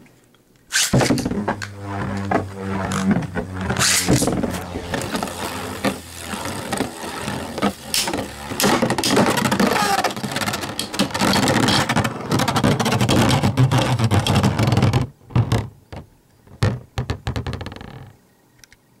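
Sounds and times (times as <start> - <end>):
spinning tops clashing in plastic stadium: 0.7 - 13.3.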